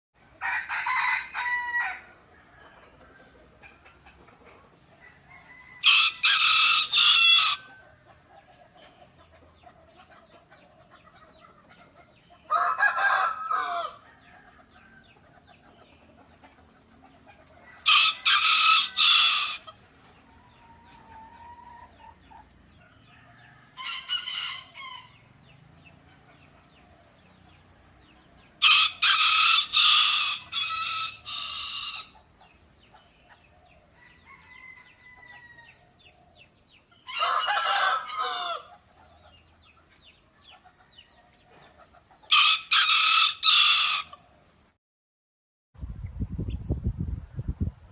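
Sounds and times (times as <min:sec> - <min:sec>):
roosters crowing: 0:00.3 - 0:03.6, 0:04.9 - 0:08.4, 0:12.4 - 0:15.5, 0:16.9 - 0:27.7, 0:28.3 - 0:32.3, 0:33.7 - 0:39.4, 0:42.3 - 0:44.4.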